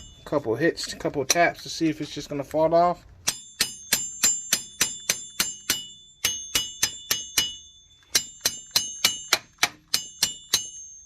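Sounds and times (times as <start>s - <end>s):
hammer ringing on steel: 0.0s - 0.6s, 3.2s - 11.0s.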